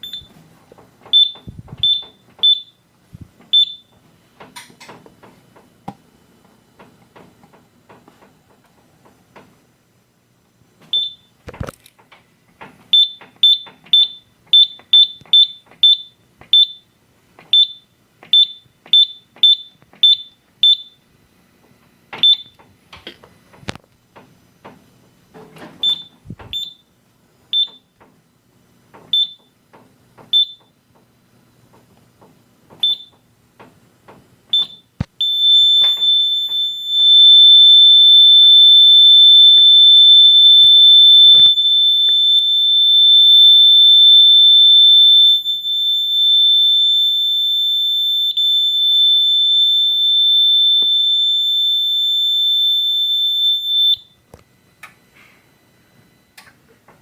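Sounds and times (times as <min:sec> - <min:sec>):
alarm panel high beeps: 0:01.2 - 0:02.8, 0:34.6 - 0:54.2
steady high alarm tone: 0:35.2 - 0:54.2.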